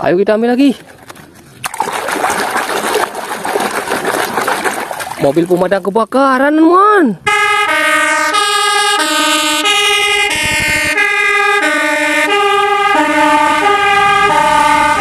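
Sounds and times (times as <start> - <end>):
two-tone fire engine siren: 7.2 - 15.0.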